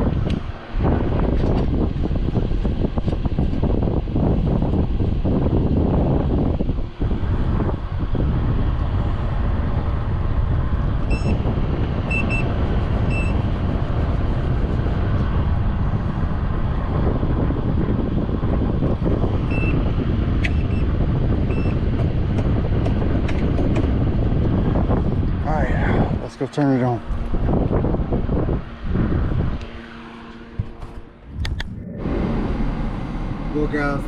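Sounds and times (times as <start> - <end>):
low rumbling noise: 0.0 - 34.0
short electronic beeps: 11.1 - 11.4.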